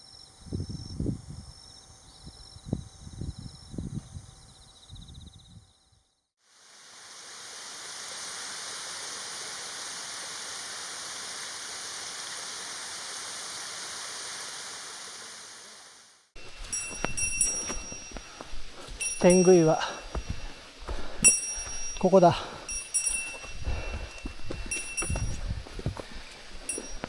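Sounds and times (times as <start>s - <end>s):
insects chirping: 0.0s - 6.3s, 7.6s - 27.0s
low thumps: 22.7s - 27.0s.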